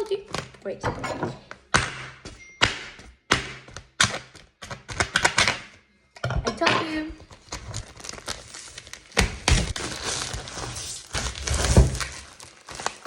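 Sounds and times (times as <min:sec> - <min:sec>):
cardboard packaging rustling: 0:07.2 - 0:13.0.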